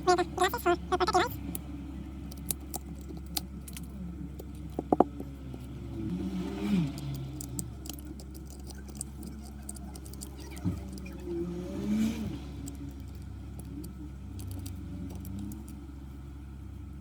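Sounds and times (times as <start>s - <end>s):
small hand tools clicking and scraping: 2.3s - 11.2s, 12.6s - 15.8s.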